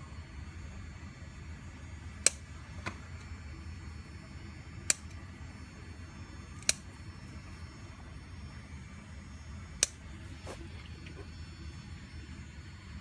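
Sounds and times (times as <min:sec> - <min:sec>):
scissors snipping stems: 0:06.6 - 0:06.8.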